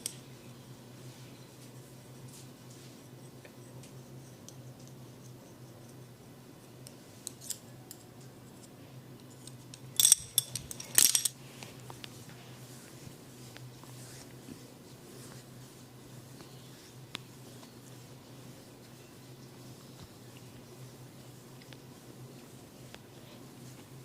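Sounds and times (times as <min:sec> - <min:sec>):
steady low hum: 0:00.0 - 0:24.0
metal implements clinking: 0:09.4 - 0:11.4.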